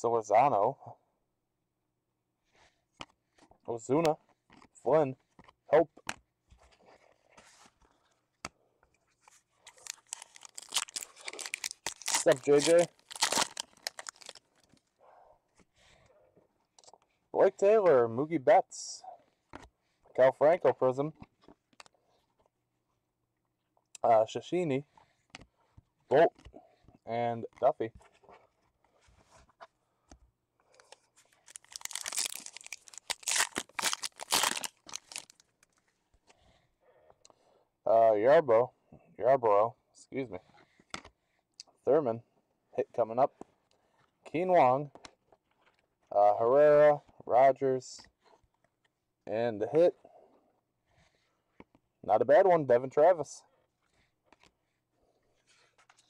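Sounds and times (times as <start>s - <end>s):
foil wrapper tearing and crinkling: 9.7s - 14.8s, 31.4s - 35.6s.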